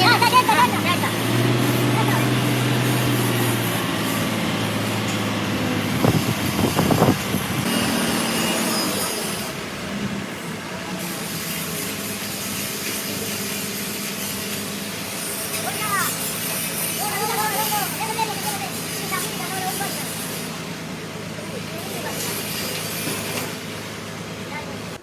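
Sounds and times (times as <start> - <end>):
truck engine running: 0.0 - 11.3.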